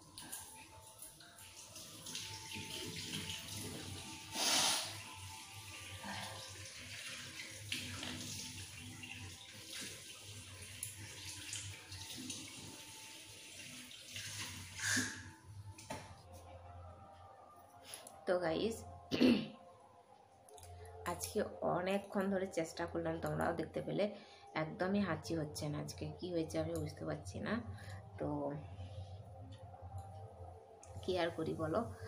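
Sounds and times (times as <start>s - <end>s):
tap water running into basin: 0.0s - 16.2s.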